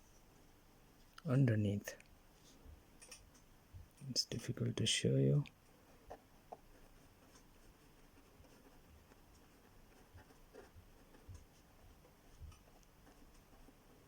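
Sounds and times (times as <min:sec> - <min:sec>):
faint ticks and taps: 0:10.2 - 0:13.6.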